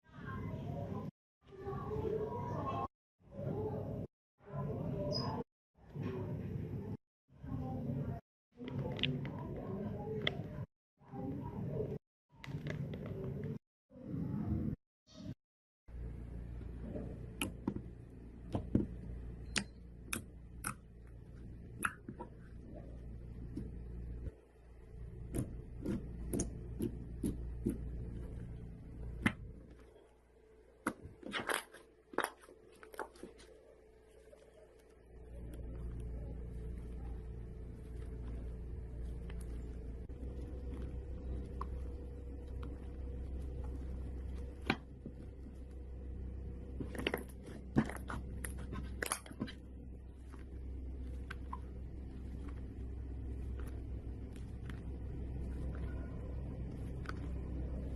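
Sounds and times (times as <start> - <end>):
steady low hum: 15.9 - 57.9
crackles and pops: 16.9 - 57.9.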